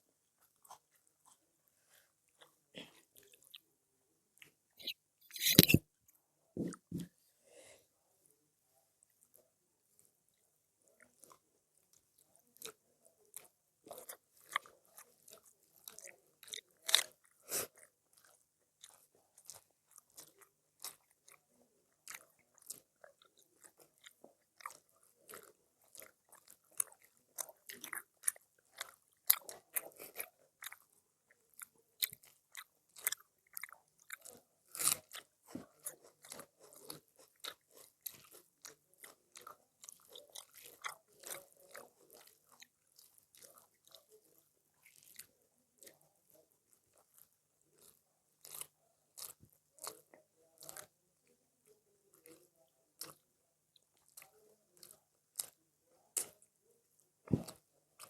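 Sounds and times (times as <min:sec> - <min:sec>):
chewing with sharp crunches: 0:00.3 - 0:03.7, 0:04.4 - 0:07.1, 0:09.0 - 0:10.2, 0:10.9 - 0:58.0.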